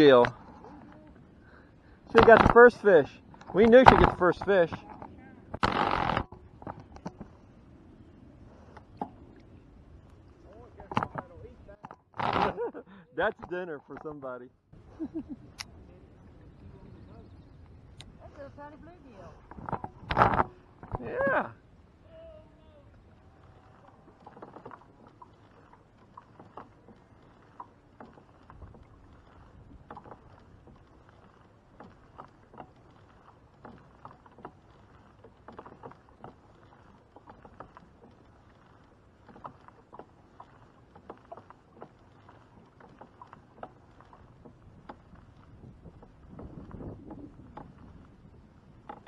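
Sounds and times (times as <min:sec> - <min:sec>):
water slapping kayak hull: 0:00.0 - 0:49.0
faint low rumble: 0:00.3 - 0:03.4.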